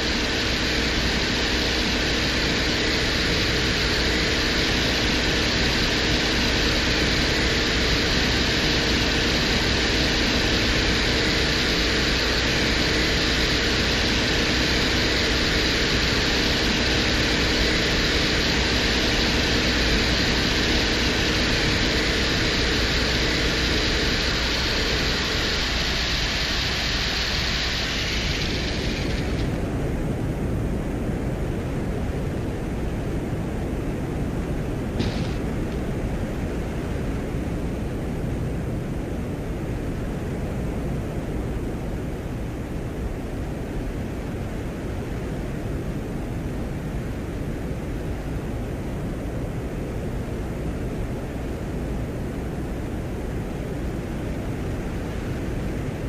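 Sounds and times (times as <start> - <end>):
faint steady tones: 0.0 - 30.8
low hum: 0.0 - 41.0
static-like hiss: 0.0 - 56.0.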